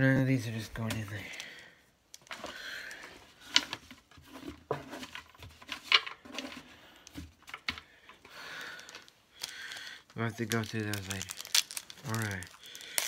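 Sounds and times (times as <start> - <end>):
trading cards tapping and rustling: 4.7 - 13.0.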